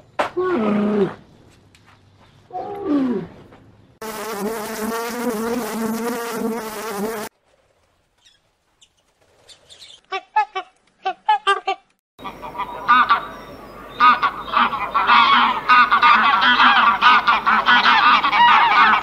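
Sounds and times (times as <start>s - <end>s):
flying insect buzzing: 4.0s - 7.3s.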